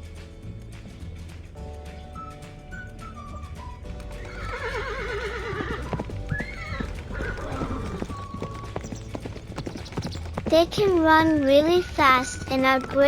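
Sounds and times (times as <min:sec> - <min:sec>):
hooves clip-clopping: 0:00.0 - 0:13.0
light background music: 0:00.0 - 0:13.0
horse whinnying: 0:02.9 - 0:10.4.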